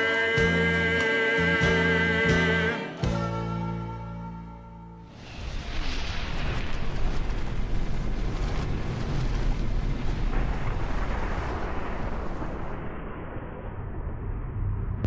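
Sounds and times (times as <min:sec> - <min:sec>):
loud rumbling roar with crackle: 0:05.2 - 0:15.0.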